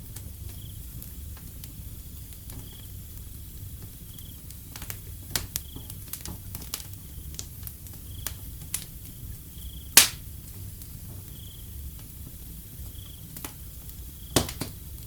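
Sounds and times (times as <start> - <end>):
wood fire crackling and popping: 0.0 - 15.0
cricket chirping: 0.4 - 1.1, 1.8 - 4.8, 8.0 - 10.3, 11.3 - 12.0, 12.6 - 15.0.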